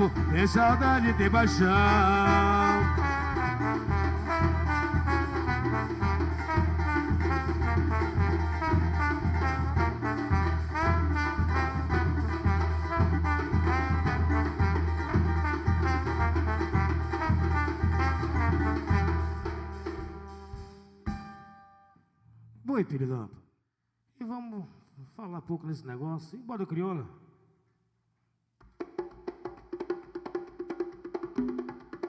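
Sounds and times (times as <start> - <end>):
driving drum beat: 0.0 - 21.5
instrumental band melody: 0.0 - 21.8.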